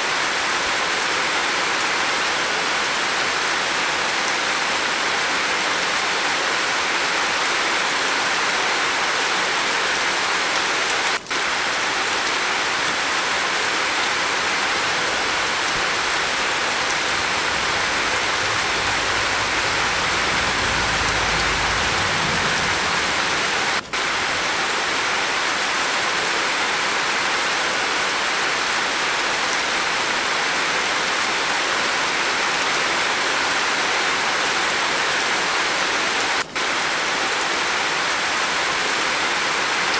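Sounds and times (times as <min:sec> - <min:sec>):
heavy rain on a roof: 0:00.0 - 0:39.9
low rumble: 0:14.0 - 0:23.9.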